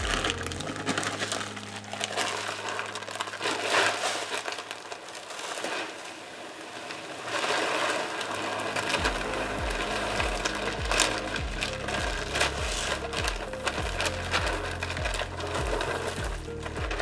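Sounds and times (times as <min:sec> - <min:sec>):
corn kernels pouring: 0:00.0 - 0:17.0
feed bag crinkling: 0:00.0 - 0:17.0.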